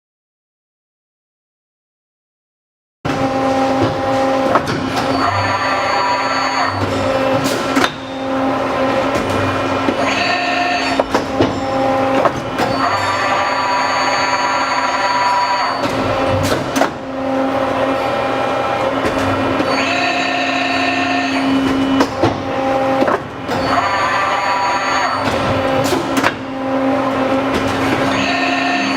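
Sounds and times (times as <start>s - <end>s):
tube bender machine running: 3.1s - 28.9s
sharp clicks and clunks: 25.2s - 26.4s.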